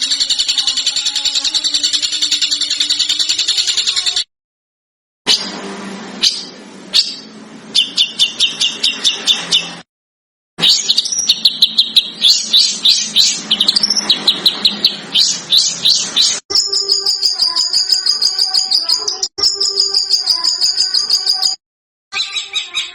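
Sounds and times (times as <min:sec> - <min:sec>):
small songbird chirping: 0:06.2 - 0:09.8.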